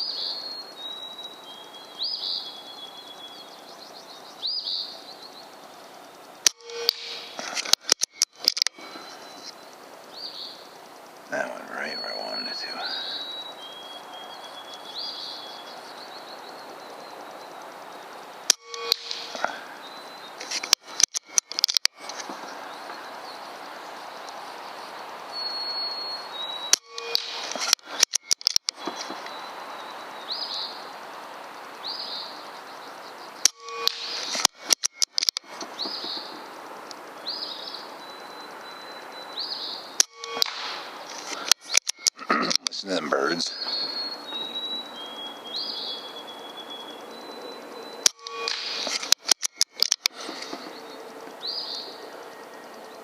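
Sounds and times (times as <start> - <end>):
outdoor hiss: 0.0 - 34.8, 35.4 - 49.3, 50.0 - 53.0
bird chirping: 0.0 - 53.0
rifle bolt clicks: 20.4 - 22.2, 27.1 - 28.8, 33.4 - 35.5
air rifle shots: 40.0 - 41.8, 48.1 - 49.9
air rifle shot crack: 40.3 - 41.5.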